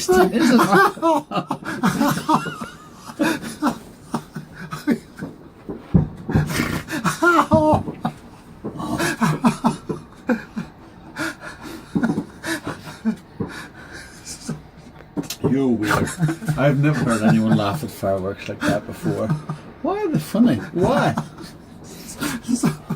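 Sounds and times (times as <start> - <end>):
man laughing breathlessly: 0.1 - 5.3, 6.3 - 14.7, 18.6 - 22.9.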